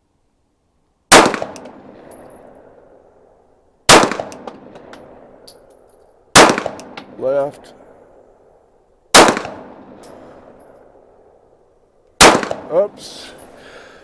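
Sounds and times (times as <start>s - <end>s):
pistol shots echoing: 1.1s - 2.8s, 3.9s - 5.4s, 6.3s - 7.2s, 9.1s - 11.1s, 12.2s - 12.8s.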